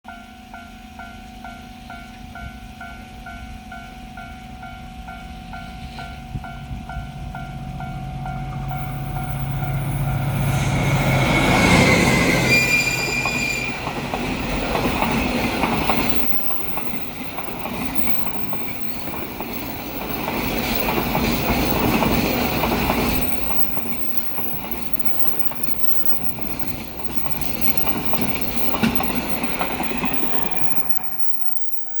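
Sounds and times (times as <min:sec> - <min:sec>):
locomotive engine drone: 0:05.4 - 0:32.0
train wheels clacking on rails: 0:08.2 - 0:32.0
level-crossing bell chiming: 0:08.4 - 0:32.0
short high tone: 0:08.7 - 0:13.9.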